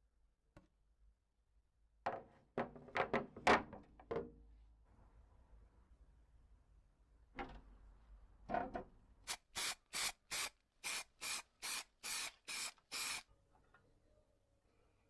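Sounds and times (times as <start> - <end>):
aerosol spray can hissing bursts: 9.3 - 13.2.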